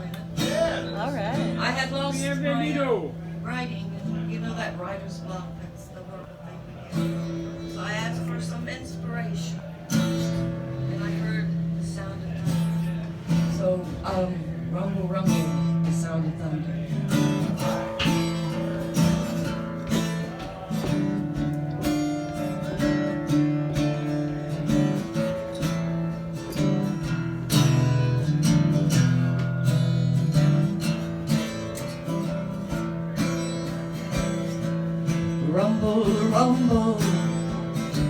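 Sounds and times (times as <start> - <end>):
acoustic guitar strumming: 0.0 - 38.0.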